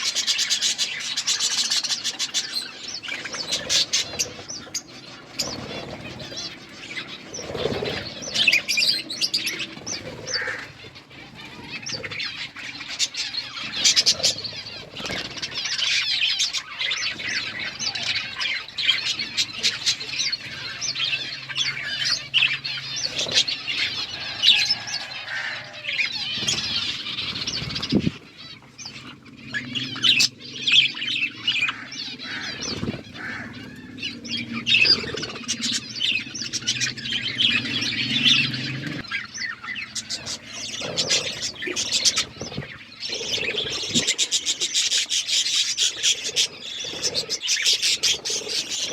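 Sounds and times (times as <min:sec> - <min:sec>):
budgies chirping and chattering: 0:00.0 - 0:48.9
wings fluttering: 0:00.0 - 0:48.9.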